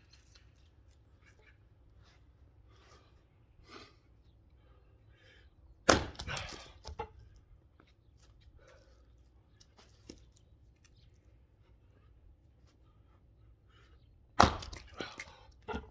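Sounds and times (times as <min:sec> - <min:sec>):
axe striking log: 0:05.8 - 0:07.0, 0:14.4 - 0:15.9
wood cracking and splintering: 0:05.9 - 0:07.1, 0:14.4 - 0:15.9.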